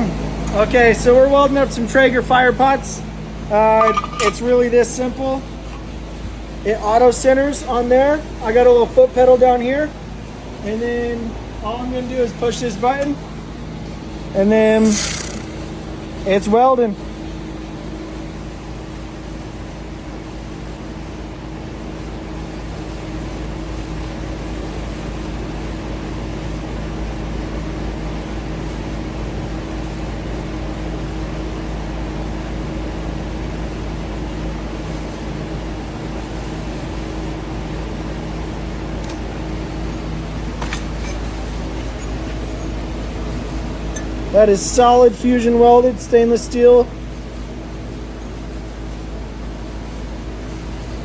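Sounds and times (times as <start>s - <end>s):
laser welding machine hum and hiss: 0.0s - 51.0s.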